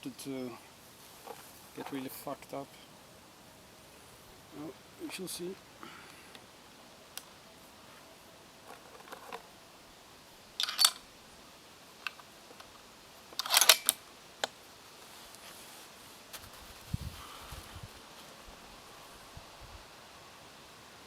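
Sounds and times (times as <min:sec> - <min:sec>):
rifle handling metallic clicks: 0:10.6 - 0:11.0, 0:13.4 - 0:14.6.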